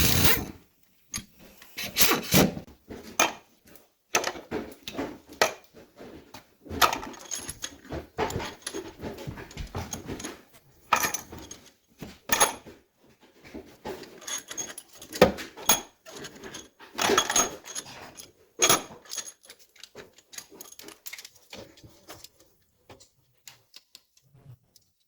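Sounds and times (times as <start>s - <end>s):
metal tools clinking: 14.0s - 22.4s.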